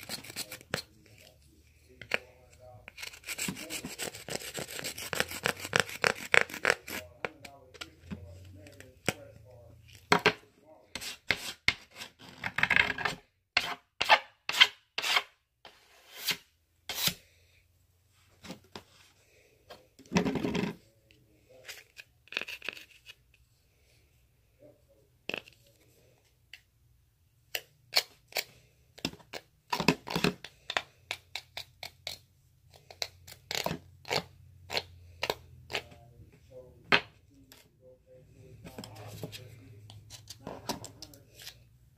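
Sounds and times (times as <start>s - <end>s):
plastic card scraping slime: 0.0s - 1.3s, 2.0s - 8.0s, 21.7s - 23.4s.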